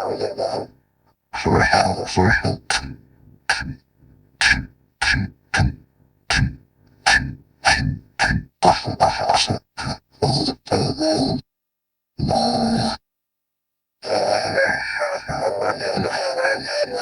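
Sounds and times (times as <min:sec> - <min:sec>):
throaty creature calls: 0:14.0 - 0:17.0.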